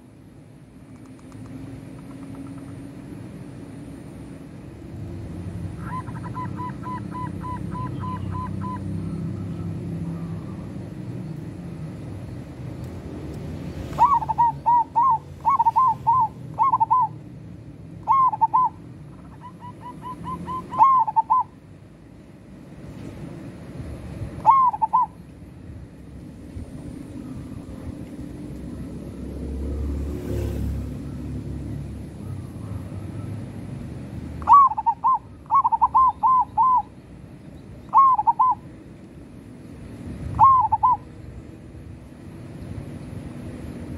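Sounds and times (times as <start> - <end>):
dove cooing: 5.7 - 10.6, 13.9 - 17.2, 18.0 - 21.6, 24.4 - 25.2, 34.4 - 36.9, 37.9 - 38.6, 40.3 - 41.1.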